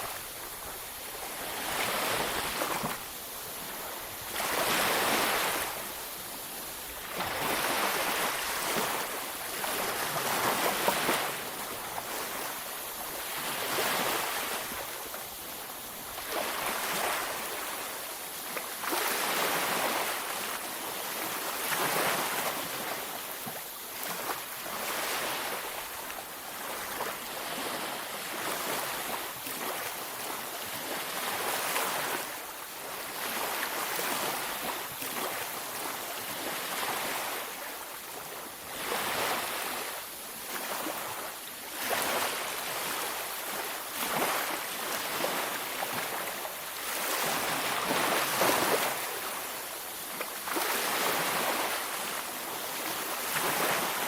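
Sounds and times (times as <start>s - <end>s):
ocean waves breaking on beach: 0.0s - 54.0s.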